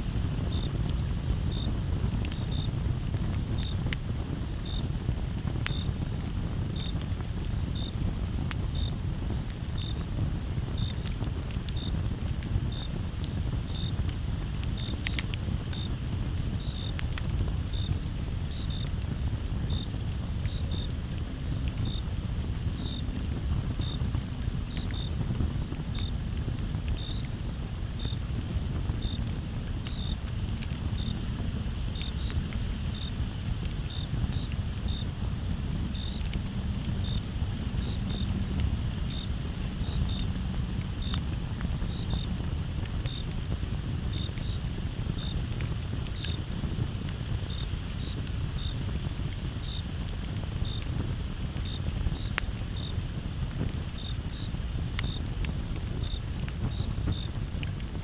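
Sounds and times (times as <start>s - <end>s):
campfire crackling: 0.0s - 58.0s
crickets trilling: 0.0s - 58.0s
cricket short chirps: 2.3s - 2.7s, 29.9s - 30.2s, 31.0s - 31.3s.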